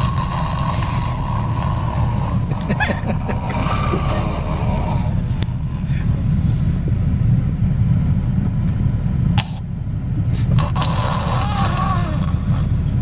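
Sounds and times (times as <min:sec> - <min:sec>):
child snoring: 0:00.0 - 0:07.0, 0:10.4 - 0:13.0
noisy breath: 0:00.0 - 0:07.2, 0:10.2 - 0:13.0
road rumble: 0:00.0 - 0:13.0.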